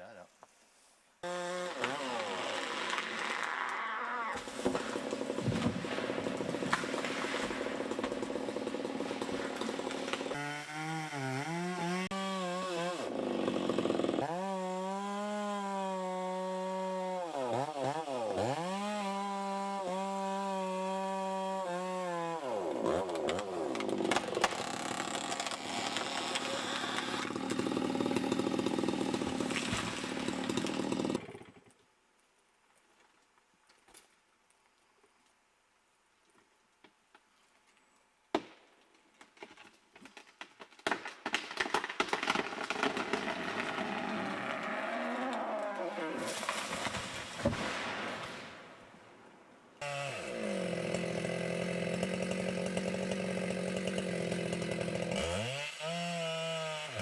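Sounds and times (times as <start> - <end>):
chainsaw running at high revs: 7.7 - 31.6, 49.8 - 57.0.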